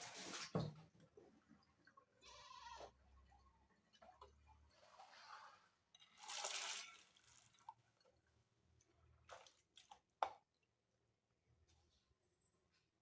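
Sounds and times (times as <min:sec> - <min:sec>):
water sloshing in a bowl: 0:03.2 - 0:08.4, 0:09.1 - 0:10.5.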